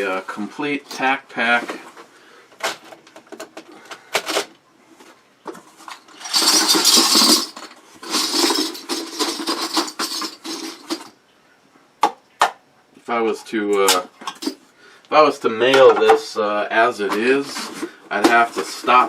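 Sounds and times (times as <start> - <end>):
metal bottle caps rattling: 5.8 - 11.2.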